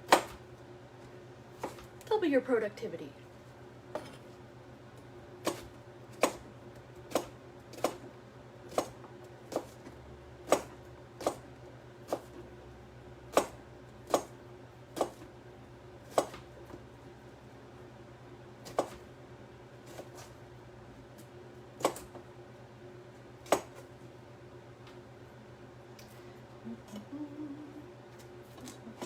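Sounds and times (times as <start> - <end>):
knife chopping on cutting board: 0.1 - 0.4, 5.4 - 6.5, 7.1 - 8.0, 8.7 - 9.9, 10.5 - 11.5, 13.3 - 14.4, 15.0 - 15.3, 16.1 - 16.4, 18.6 - 19.0, 21.8 - 22.2, 23.4 - 23.8.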